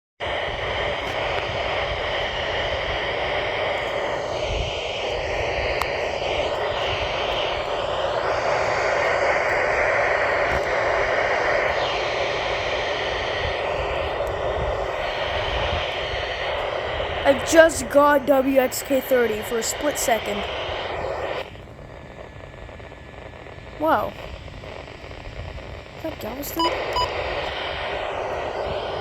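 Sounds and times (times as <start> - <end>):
radio static hiss: 0.2 - 29.0
faint distant radio broadcast: 17.2 - 21.0, 26.0 - 28.9.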